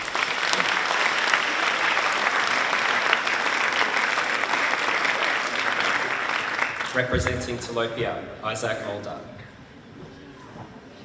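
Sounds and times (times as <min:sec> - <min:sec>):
audience applause: 0:00.0 - 0:07.1.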